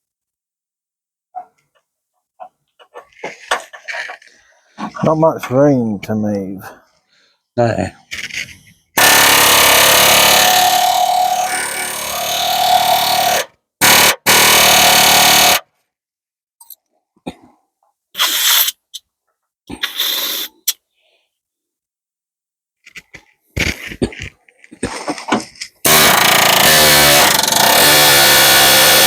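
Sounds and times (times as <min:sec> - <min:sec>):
pneumatic air hammer bursts: 0:09.0 - 0:15.6, 0:18.2 - 0:18.9, 0:25.8 - 0:29.0.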